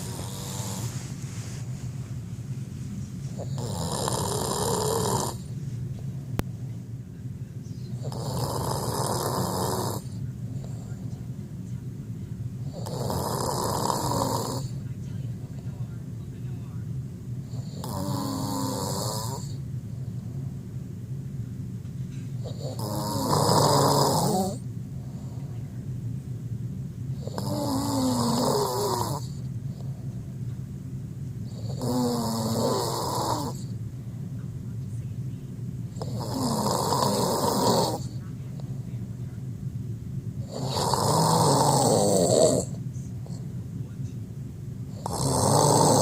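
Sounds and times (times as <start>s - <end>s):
man snoring: 0.0s - 1.0s, 3.3s - 5.5s, 8.0s - 10.8s, 12.6s - 14.8s, 17.5s - 19.6s, 22.4s - 25.2s, 27.2s - 29.4s, 31.5s - 33.7s, 36.0s - 38.2s, 40.4s - 43.4s, 44.9s - 46.0s
steady low hum: 0.0s - 46.0s.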